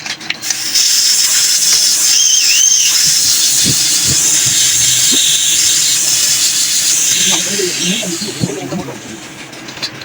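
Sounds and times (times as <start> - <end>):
loud steady hiss: 0.4 - 9.6
rising and falling squeal: 1.7 - 6.5.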